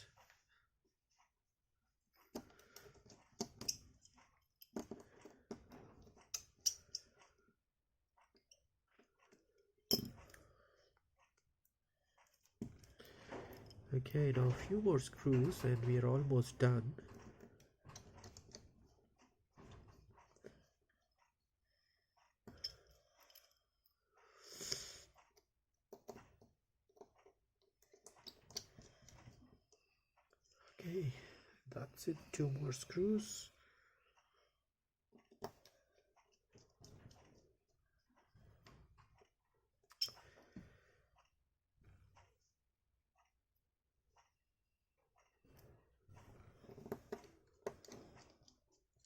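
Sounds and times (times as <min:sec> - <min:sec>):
small tools clicking and scraping: 0:02.2 - 0:07.4, 0:22.4 - 0:23.8, 0:39.1 - 0:40.3.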